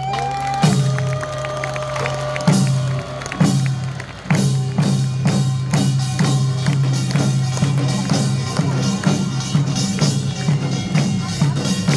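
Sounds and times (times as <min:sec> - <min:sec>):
drum strikes: 0:03.4 - 0:11.9.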